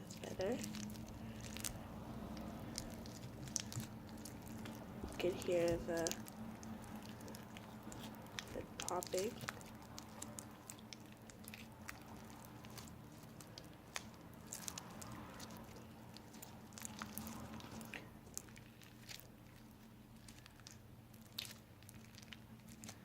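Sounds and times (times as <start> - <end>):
slime squishing and popping: 0.0 - 23.0.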